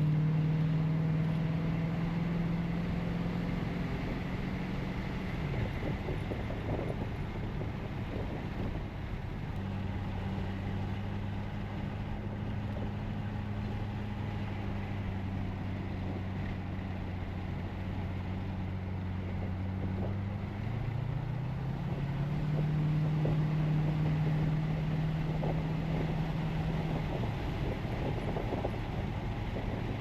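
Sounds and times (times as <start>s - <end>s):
car engine accelerating: 0.0s - 30.0s.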